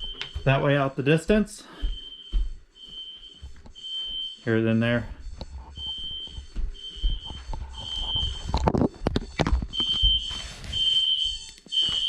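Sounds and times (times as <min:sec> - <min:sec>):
fire alarm horn high tones: 0:01.9 - 0:08.6, 0:09.8 - 0:12.0.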